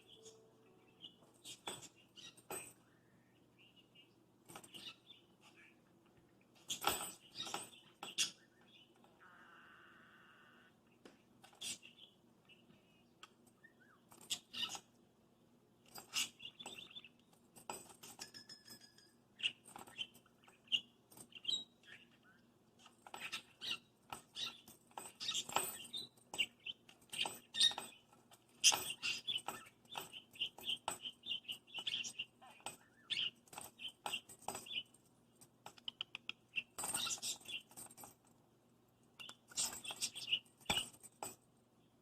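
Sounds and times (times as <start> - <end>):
toy bell jingling: 36.6 - 38.1.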